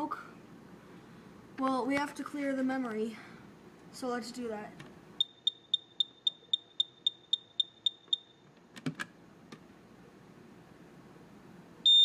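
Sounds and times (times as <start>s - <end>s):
smoke alarm chirping: 5.2s - 8.4s.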